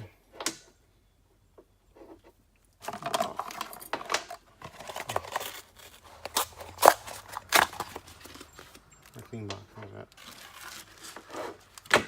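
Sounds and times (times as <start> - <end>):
packaging rustling with clicks: 2.8 - 12.0.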